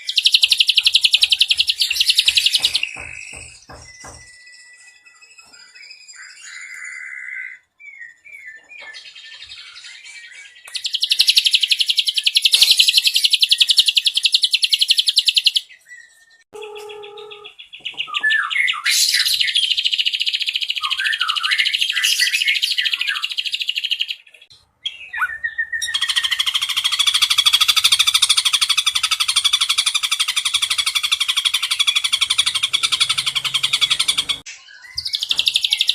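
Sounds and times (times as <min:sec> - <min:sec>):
fast high bird trills: 0:25.1 - 0:34.5
bird whistling notes: 0:25.1 - 0:35.9.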